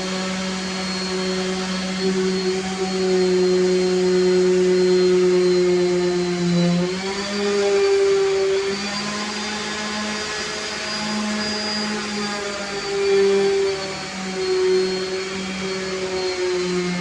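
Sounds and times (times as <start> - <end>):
power tool motor humming: 0.0 - 17.0.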